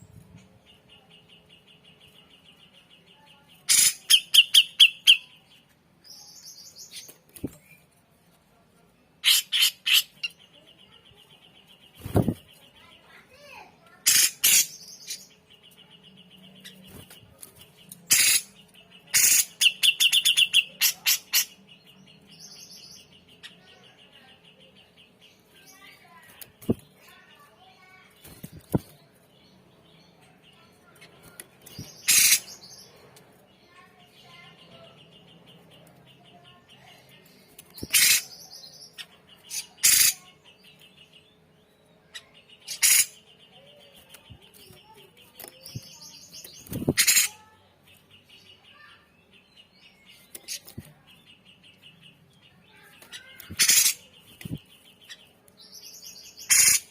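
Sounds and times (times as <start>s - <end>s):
bird rapid trill: 3.7s - 5.2s, 12.0s - 12.5s, 14.0s - 15.2s, 18.1s - 21.5s, 31.8s - 32.8s, 37.8s - 38.6s, 39.5s - 40.3s, 42.6s - 43.2s, 45.7s - 47.5s, 52.7s - 55.1s, 55.8s - 56.9s
bird harsh calls: 3.7s - 5.3s, 9.2s - 10.4s, 12.0s - 15.4s, 18.0s - 21.6s, 31.7s - 32.9s, 37.7s - 40.4s, 42.2s - 43.8s, 44.7s - 47.6s, 52.6s - 56.9s.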